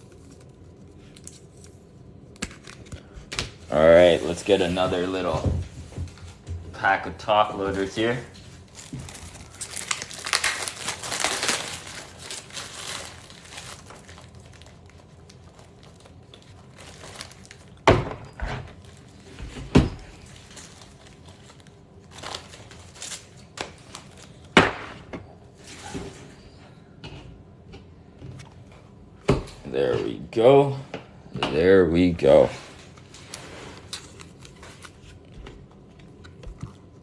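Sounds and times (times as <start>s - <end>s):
plastic wrapping crinkling: 7.3s - 17.9s, 20.0s - 24.6s, 32.4s - 37.0s.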